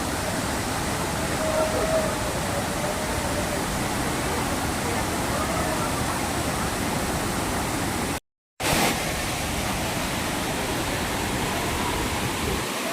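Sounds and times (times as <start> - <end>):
waterfall roaring: 0.0 - 12.9.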